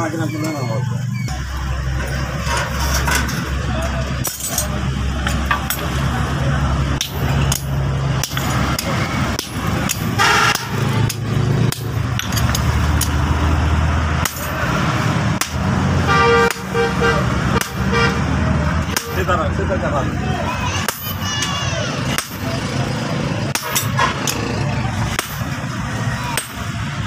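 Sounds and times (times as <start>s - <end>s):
hammer striking steel on anvil: 7.0s - 13.2s.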